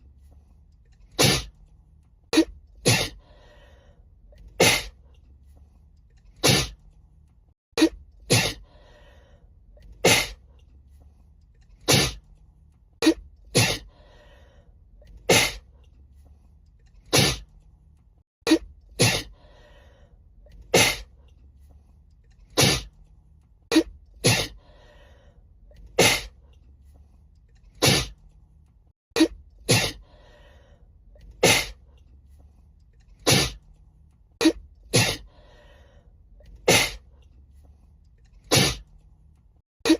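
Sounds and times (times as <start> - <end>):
woman sneezing: 2.8 - 3.2, 7.8 - 8.6, 13.0 - 13.9, 18.5 - 19.3, 23.7 - 24.6, 29.2 - 30.0, 31.4 - 31.8, 34.4 - 35.3, 36.7 - 37.0, 38.5 - 38.8.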